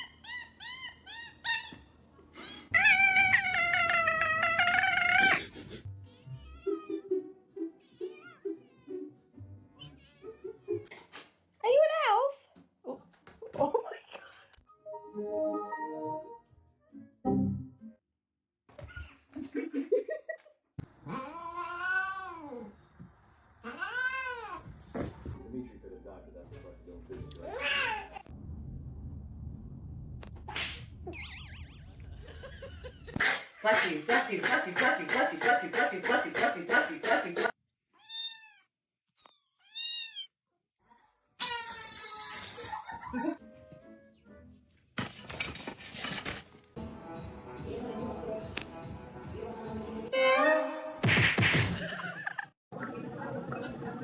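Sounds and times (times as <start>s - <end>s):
cat meowing: 2.4s - 5.4s
cat yowling: 2.4s - 5.4s, 21.0s - 22.7s, 23.6s - 24.6s.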